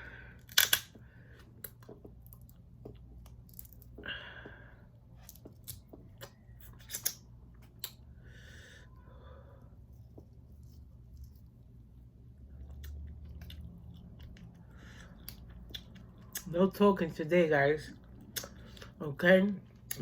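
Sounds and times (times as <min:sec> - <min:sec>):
shell cracking clicks: 0:00.4 - 0:01.0
crab being chewed: 0:10.3 - 0:16.6.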